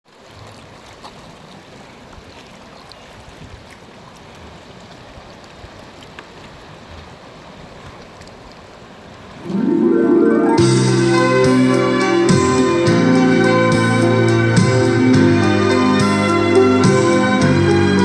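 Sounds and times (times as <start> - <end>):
small water splashes: 0.1 - 9.4
sea surf washing on shore: 0.1 - 18.0.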